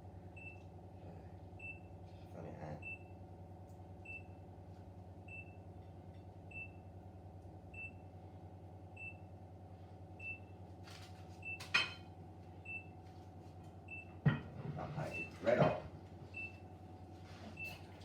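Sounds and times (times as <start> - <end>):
low appliance hum: 0.0 - 18.0
appliance alert beeps: 2.8 - 3.2, 4.0 - 4.4, 5.3 - 5.7, 6.5 - 6.9, 7.7 - 8.1, 8.9 - 9.3, 10.2 - 10.6, 12.6 - 13.0, 13.9 - 14.2, 15.1 - 15.4, 16.3 - 16.7, 17.6 - 17.8
kitchenware clinking: 11.6 - 12.1.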